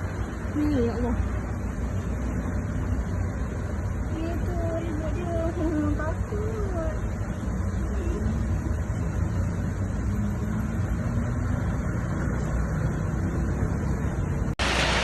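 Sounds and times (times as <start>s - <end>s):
wind and rain hissing: 13.5s - 15.0s.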